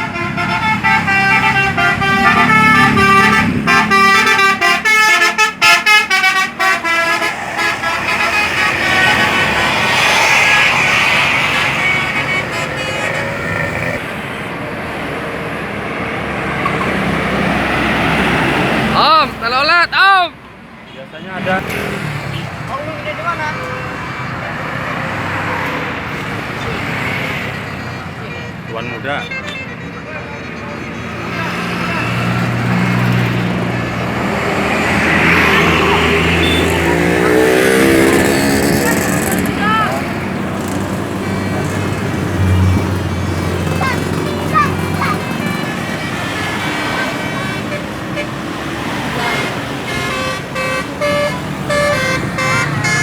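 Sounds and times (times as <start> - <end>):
bus multi-tone horn: 0.0 - 14.3, 25.4 - 33.9, 34.9 - 53.0
road traffic and engine noise: 0.0 - 53.0.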